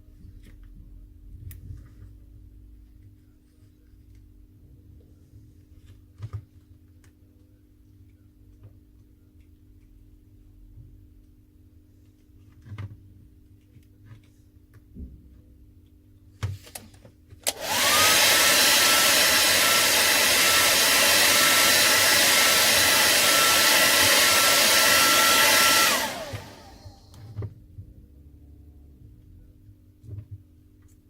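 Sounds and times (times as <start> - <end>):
hair dryer switch click: 17.4 - 26.8
hair dryer blowing: 17.4 - 27.3.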